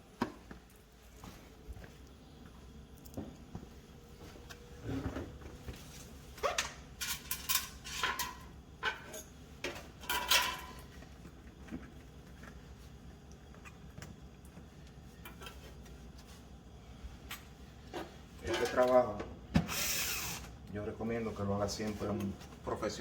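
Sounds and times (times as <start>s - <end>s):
panels and parts clattering: 4.6s - 11.0s.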